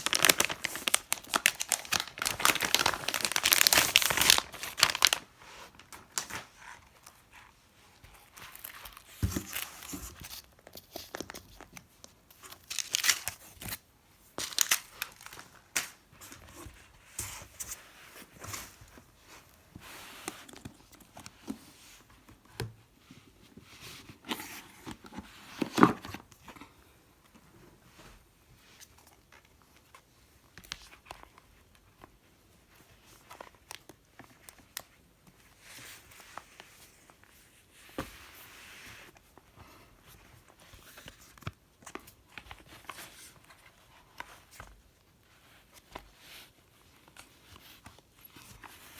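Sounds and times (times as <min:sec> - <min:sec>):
packaging torn and crinkled: 0:00.0 - 0:05.2, 0:12.5 - 0:13.4, 0:14.4 - 0:16.0.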